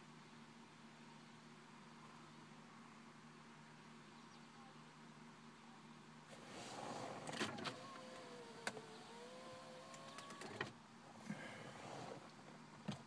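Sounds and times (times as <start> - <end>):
power window motor whine: 6.3 - 10.8.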